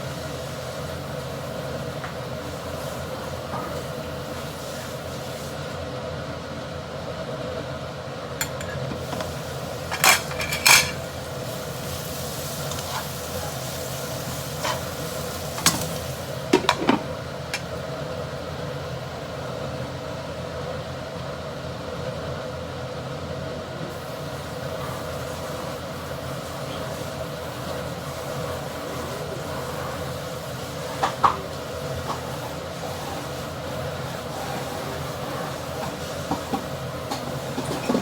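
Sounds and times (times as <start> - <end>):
humming kitchen noise: 0.0 - 38.0
metal cookware clanking: 8.4 - 11.2, 14.5 - 17.8.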